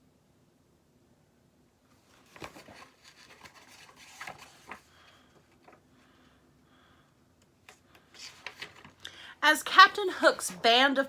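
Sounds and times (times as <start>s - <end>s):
paper page rustling: 1.9s - 5.9s, 7.6s - 9.0s.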